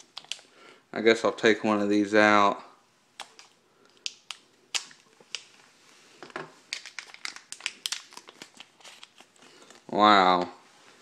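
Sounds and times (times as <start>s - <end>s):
plastic packaging clicking and crinkling: 0.0s - 0.5s, 6.3s - 10.0s.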